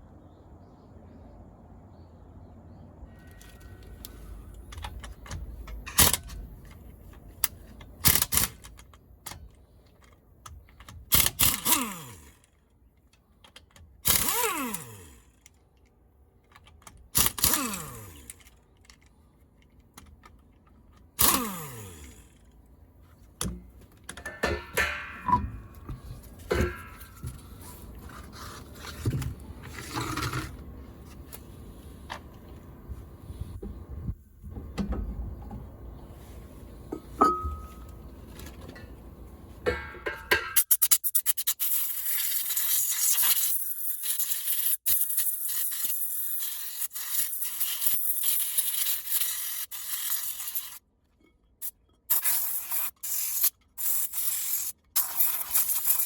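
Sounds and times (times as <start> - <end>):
power tool whirring: 14.1 - 15.4, 21.2 - 22.5
metal tools clinking: 24.1 - 28.3, 37.0 - 38.0.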